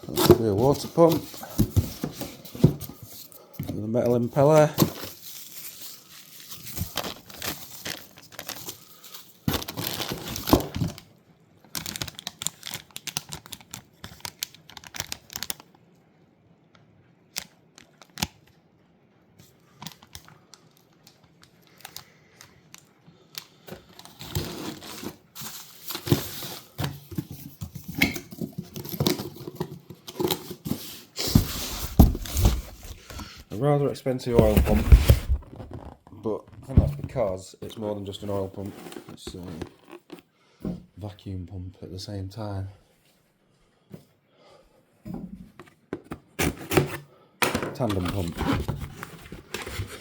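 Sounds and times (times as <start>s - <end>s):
packaging tearing and crinkling: 4.1s - 11.0s, 11.7s - 15.7s, 23.8s - 33.4s, 47.8s - 50.0s.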